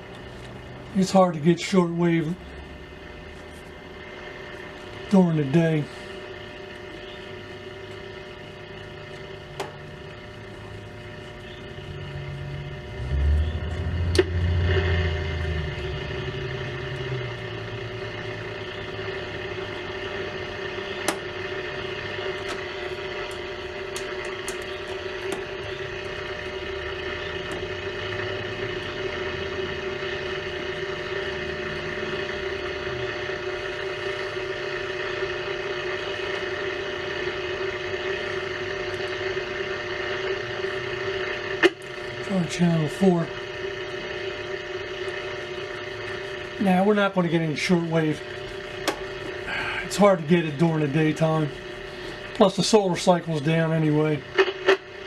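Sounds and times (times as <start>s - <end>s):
radio static hiss and whine: 0.0s - 55.0s
low rumble: 11.6s - 20.3s.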